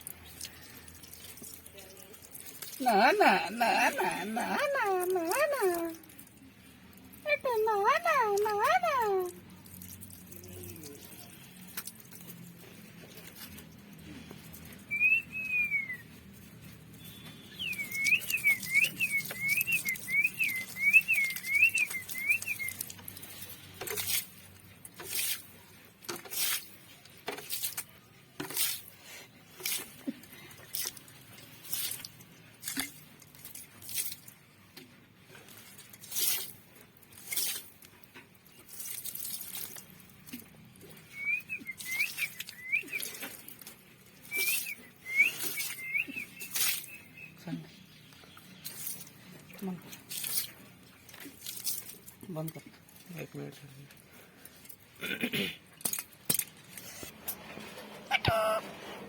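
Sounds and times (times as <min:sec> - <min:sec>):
parrot whistling: 0:14.9 - 0:16.0, 0:17.1 - 0:22.7, 0:44.4 - 0:46.2, 0:58.1 - 0:58.7.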